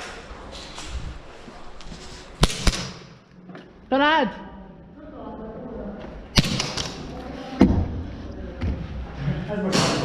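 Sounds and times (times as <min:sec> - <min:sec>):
footsteps: 0:00.0 - 0:03.8
rustling: 0:00.2 - 0:02.5.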